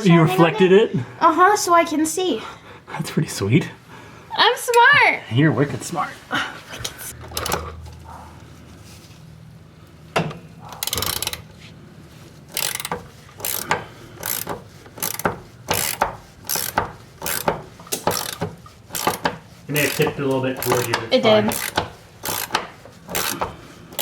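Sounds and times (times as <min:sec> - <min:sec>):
ratchet wrench clicking: 0:10.7 - 0:11.5, 0:12.5 - 0:24.0.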